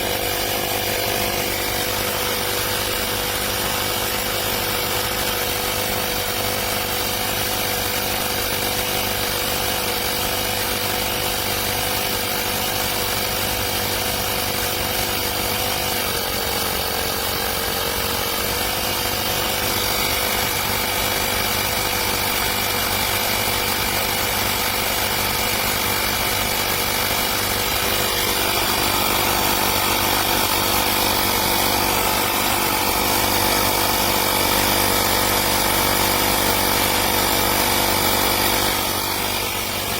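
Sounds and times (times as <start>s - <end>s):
electric tyre inflator running: 0.0s - 39.9s.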